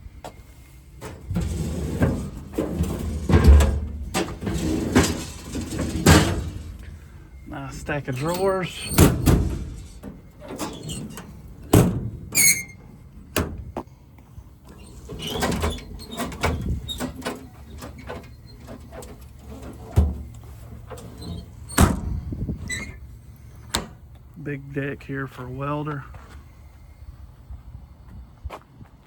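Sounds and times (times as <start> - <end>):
steel drawers sliding rattles: 1.0 - 7.0, 7.8 - 13.7, 14.7 - 22.9
metal knocks and clanks: 1.1 - 7.0, 8.1 - 12.6.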